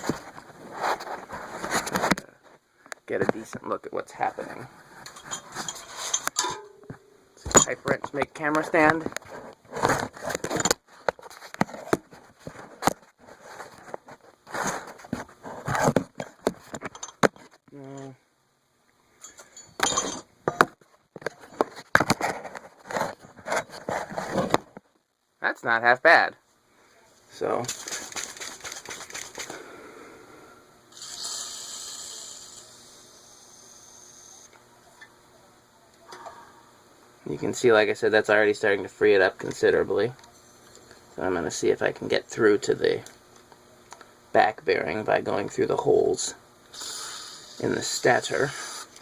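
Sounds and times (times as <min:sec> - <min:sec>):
aerosol can spraying: 0:46.8 - 0:47.6.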